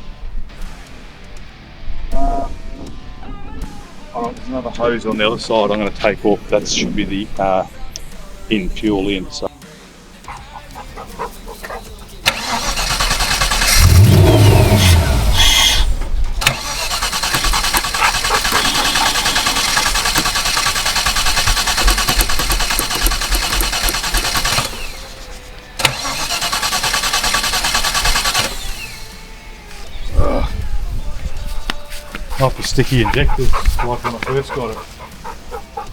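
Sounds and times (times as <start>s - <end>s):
engine cranking on starter motor: 10.8s - 29.4s.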